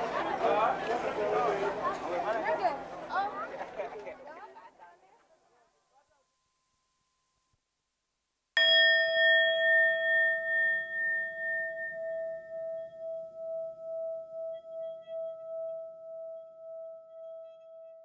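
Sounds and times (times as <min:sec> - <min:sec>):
metal bell ringing: 0:08.6 - 0:13.0.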